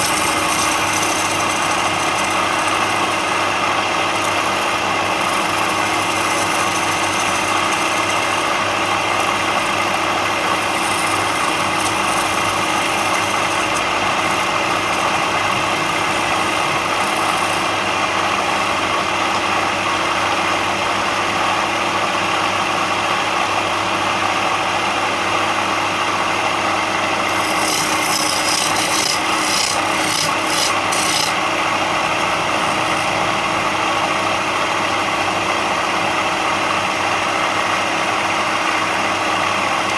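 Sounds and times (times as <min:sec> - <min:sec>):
wood rasping against tool: 0:00.0 - 0:18.3, 0:27.1 - 0:31.4, 0:32.2 - 0:33.2
power tool motor hum: 0:00.0 - 0:19.5, 0:26.9 - 0:34.3.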